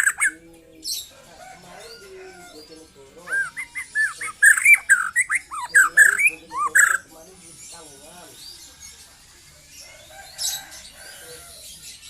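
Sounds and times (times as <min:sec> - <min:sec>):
bird singing whistled notes: 0:03.2 - 0:07.1.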